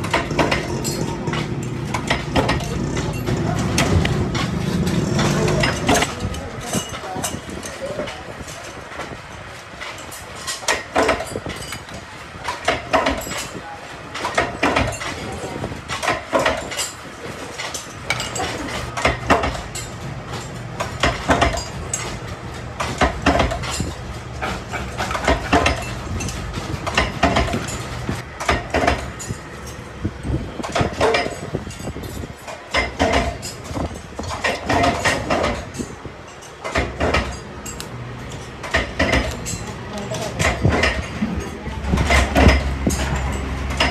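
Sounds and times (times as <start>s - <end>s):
low machine hum: 0.0s - 8.2s.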